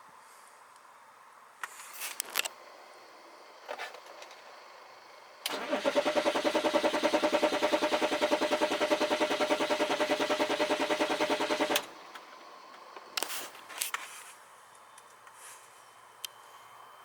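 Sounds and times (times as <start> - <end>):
starter cranking diesel engine: 5.4 - 13.1.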